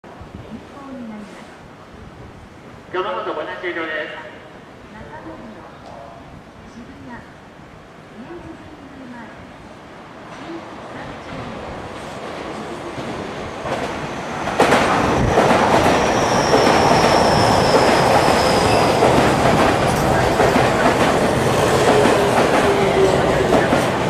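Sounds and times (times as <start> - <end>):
electric train passing: 7.0 - 24.0
high wheel squeal: 16.0 - 19.0.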